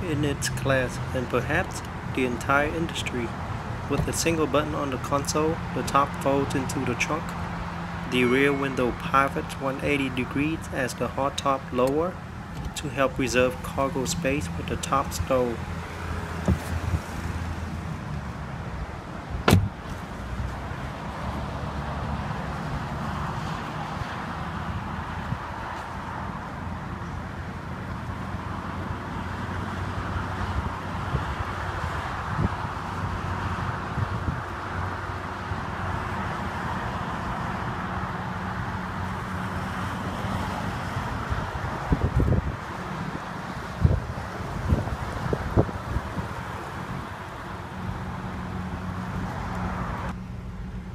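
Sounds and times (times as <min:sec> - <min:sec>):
car engine humming: 0:00.0 - 0:23.7
wind noise on microphone: 0:16.4 - 0:20.1, 0:30.4 - 0:35.0, 0:40.8 - 0:47.3
short knocks: 0:19.4 - 0:19.8
loud mechanism clunk: 0:19.5 - 0:19.8.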